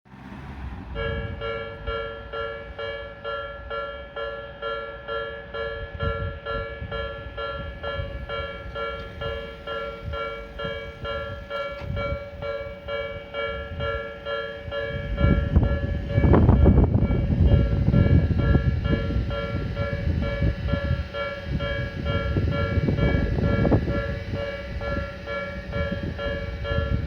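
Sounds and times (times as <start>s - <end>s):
level-crossing alarm two-tone clang: 1.1s - 27.0s
low rumble: 5.8s - 27.0s.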